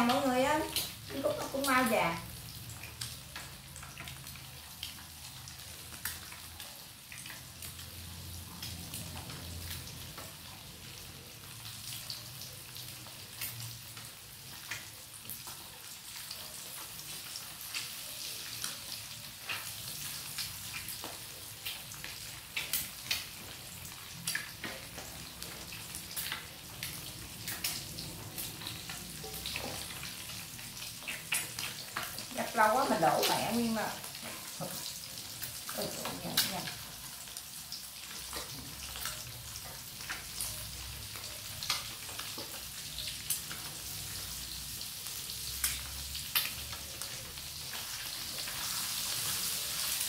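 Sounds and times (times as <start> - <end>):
eggs sizzling in a pan: 0.0 - 50.0
sharp pops and crackles: 31.0 - 32.2.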